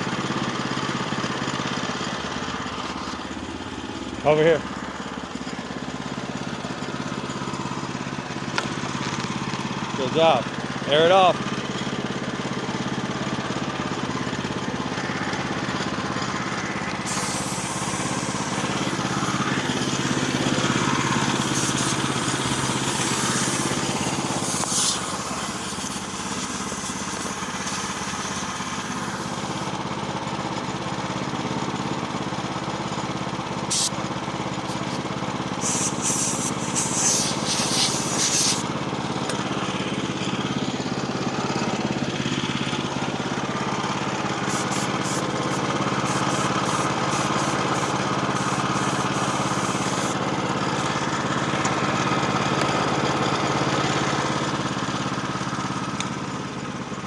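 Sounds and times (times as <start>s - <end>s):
gasoline engine running: 0.0s - 57.0s
hissing noise: 17.1s - 20.2s, 21.2s - 29.7s, 34.7s - 35.0s, 35.6s - 38.7s, 44.5s - 50.2s.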